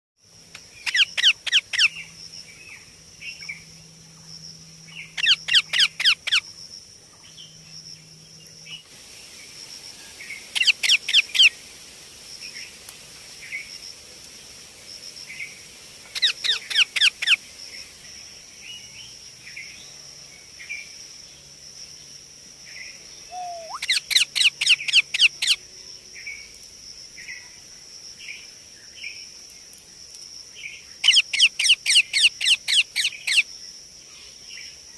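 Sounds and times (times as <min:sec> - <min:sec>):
parakeet shrill calls: 0:00.8 - 0:01.9, 0:05.2 - 0:06.4, 0:10.6 - 0:11.5, 0:23.3 - 0:25.6
parakeet soft chirps: 0:10.5 - 0:11.5, 0:23.3 - 0:25.6.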